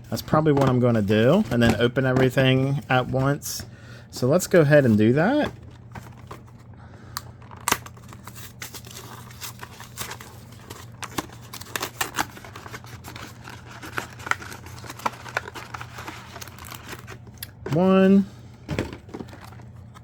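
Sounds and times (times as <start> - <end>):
card packs being opened: 0.0 - 3.6, 4.4 - 20.0
steady low hum: 0.0 - 20.0.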